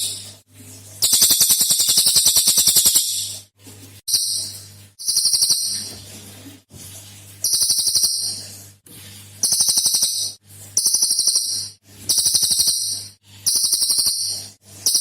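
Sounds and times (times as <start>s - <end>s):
songbird rapid rattling song: 1.0s - 3.4s, 4.1s - 5.9s, 7.4s - 8.4s, 9.4s - 15.0s.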